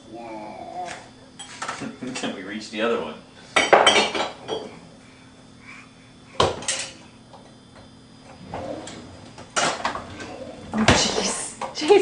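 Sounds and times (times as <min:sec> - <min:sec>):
dishes clinking: 0:03.6 - 0:04.7.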